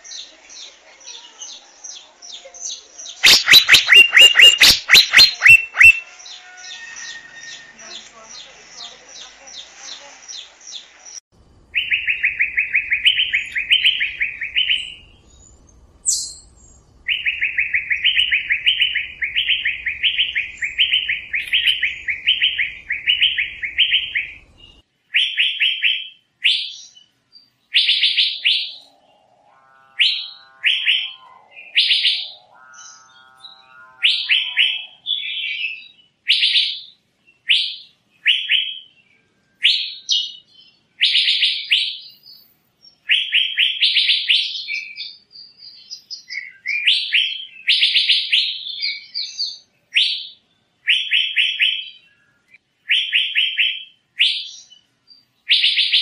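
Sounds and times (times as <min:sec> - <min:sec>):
lower multi-pitched bird call: 0:02.7 - 0:08.5, 0:11.8 - 0:15.2, 0:16.1 - 0:24.4, 0:27.7 - 0:39.0
bird calling with whistled notes: 0:03.0 - 0:08.0, 0:11.8 - 0:27.1, 0:30.0 - 0:39.0, 0:39.6 - 0:56.0.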